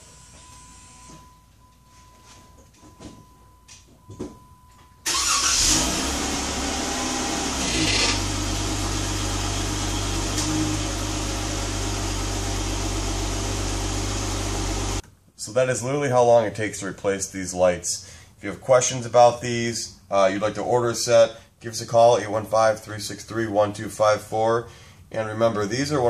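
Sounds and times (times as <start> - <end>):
car engine starting and idling: 5.0 - 15.0.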